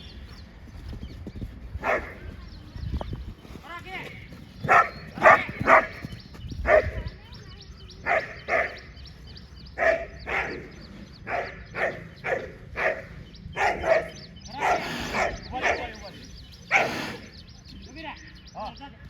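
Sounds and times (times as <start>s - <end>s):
dog barking: 1.8s - 2.2s, 4.7s - 6.0s, 6.6s - 7.0s, 8.0s - 8.9s, 9.8s - 15.9s, 16.7s - 17.0s.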